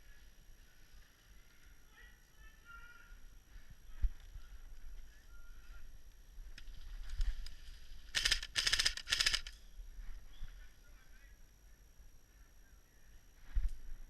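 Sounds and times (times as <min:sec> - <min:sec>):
airsoft gun full-auto bursts: 0:08.1 - 0:09.5.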